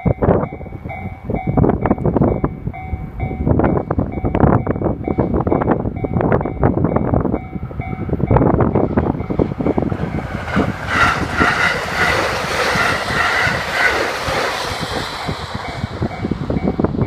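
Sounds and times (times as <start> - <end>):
level crossing warning bell: 0.0 - 10.3
train wheels clattering on rails: 0.0 - 17.0
wind buffeting microphone: 0.0 - 17.0.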